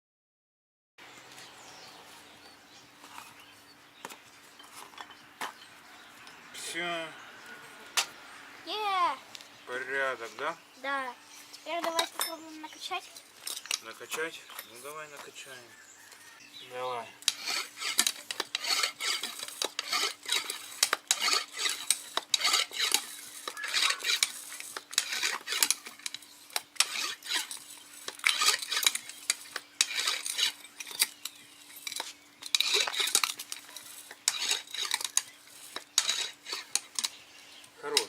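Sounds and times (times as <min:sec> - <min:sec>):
pump clacking: 0:17.2 - 0:31.1, 0:31.9 - 0:37.1.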